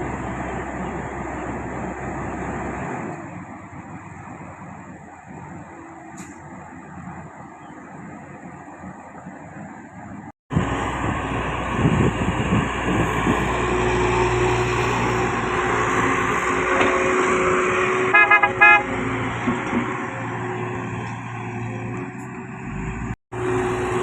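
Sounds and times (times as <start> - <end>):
heavy diesel machinery running: 0.0 - 24.0
horn toots: 18.0 - 19.0.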